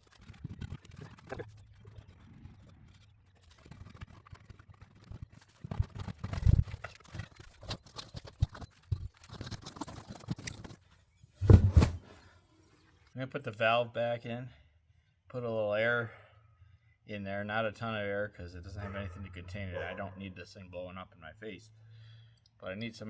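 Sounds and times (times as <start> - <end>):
scraping and rustling of tire: 0.2 - 12.5
loud thump: 11.4 - 12.2.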